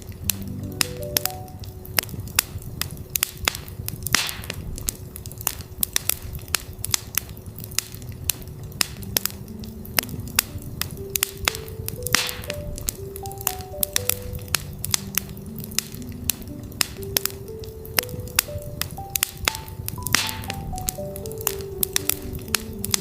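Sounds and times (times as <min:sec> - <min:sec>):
soft synthesised notes: 0:00.0 - 0:03.2, 0:07.7 - 0:23.0
campfire crackling: 0:00.0 - 0:23.0.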